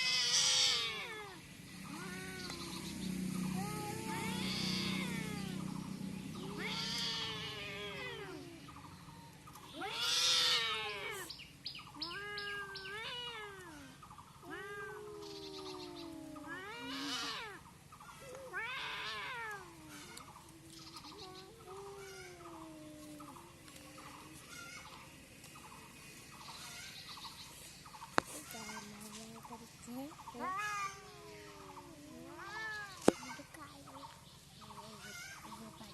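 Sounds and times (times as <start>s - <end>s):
cats yowling: 0.0s - 11.3s, 11.9s - 24.9s, 30.4s - 33.6s.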